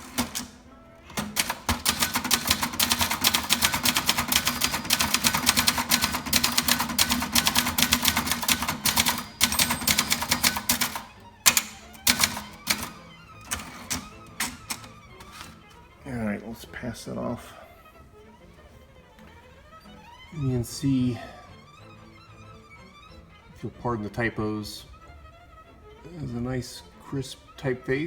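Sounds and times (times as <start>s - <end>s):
manual typewriter typing: 0.0s - 15.8s.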